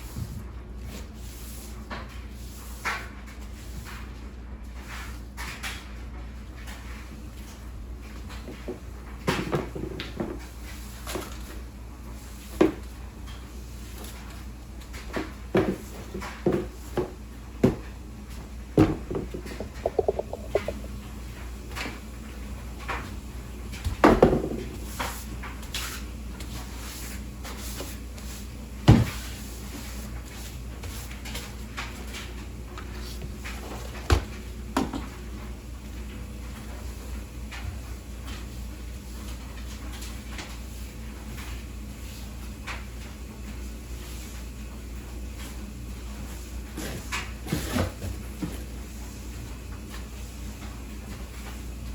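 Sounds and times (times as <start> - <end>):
household things knocking and clunking: 18.8 - 20.9.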